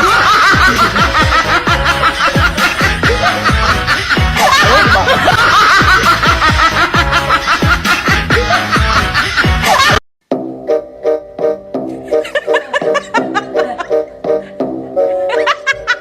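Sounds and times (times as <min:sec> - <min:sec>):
rapid chuckling laugh: 0:00.0 - 0:10.0
upbeat electronic music: 0:00.0 - 0:12.1.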